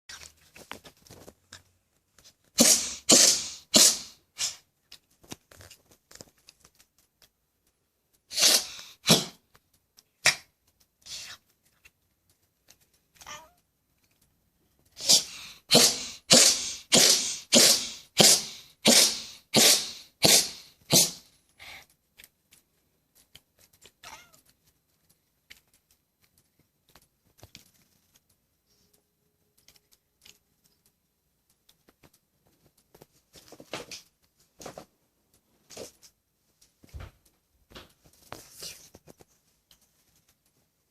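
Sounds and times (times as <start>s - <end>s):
cat sneezing: 2.6s - 4.7s, 8.3s - 9.4s, 15.0s - 21.3s.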